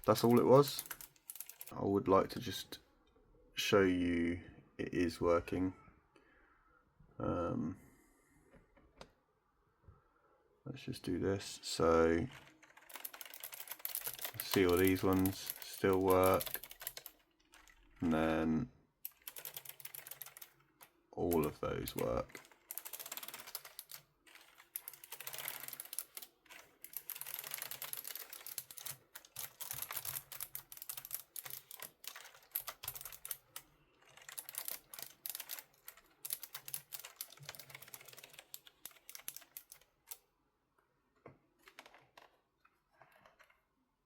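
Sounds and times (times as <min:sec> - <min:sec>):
keyboard keys clicking: 0:12.3 - 0:17.8, 0:19.1 - 0:20.5, 0:21.3 - 0:39.9.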